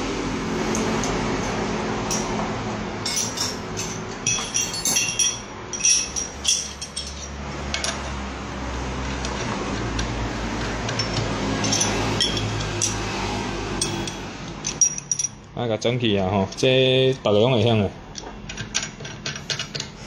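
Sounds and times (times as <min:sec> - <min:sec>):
metal tool pieces clinking: 0:02.1 - 0:02.4, 0:03.0 - 0:08.0, 0:10.9 - 0:13.1, 0:13.8 - 0:15.4.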